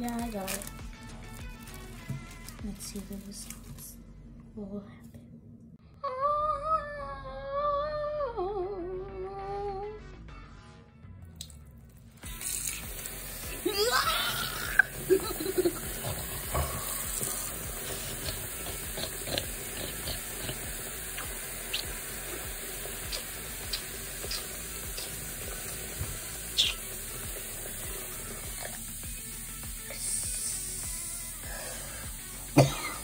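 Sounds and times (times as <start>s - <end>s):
tap water running into sink: 14.6s - 29.8s.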